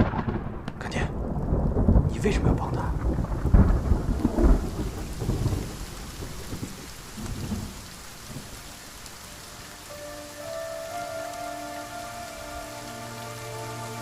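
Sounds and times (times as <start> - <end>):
thunder rumbling: 0.0 - 8.7
steady rain: 0.0 - 14.0
held music notes: 9.2 - 14.0.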